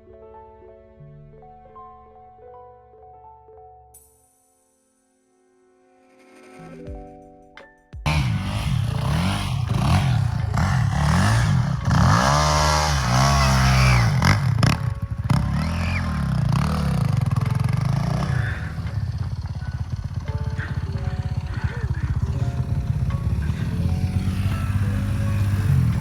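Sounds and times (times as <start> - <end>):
music: 0.0 - 26.0
dirt bike engine revving: 8.1 - 26.0.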